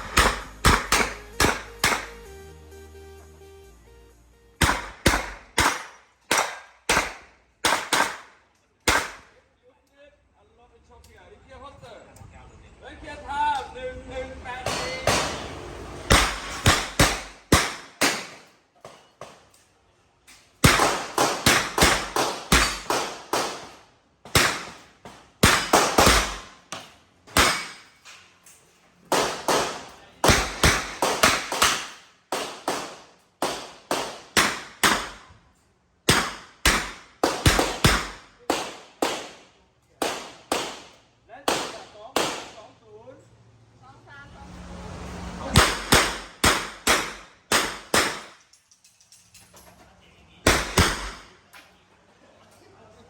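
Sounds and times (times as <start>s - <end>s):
handgun shots: 0.0s - 2.3s, 4.6s - 9.3s, 16.1s - 18.5s, 20.6s - 27.9s, 29.1s - 35.3s, 36.1s - 39.4s, 40.0s - 42.6s, 45.6s - 48.4s, 50.5s - 51.4s.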